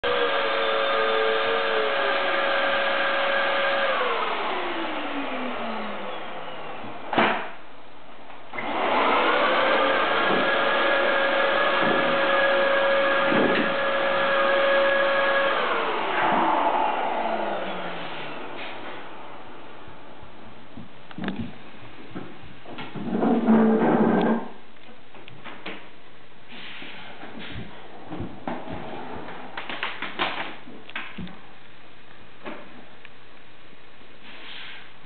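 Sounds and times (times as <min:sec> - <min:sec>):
vacuum cleaner motor whining: 0:00.0 - 0:07.2, 0:08.5 - 0:19.4.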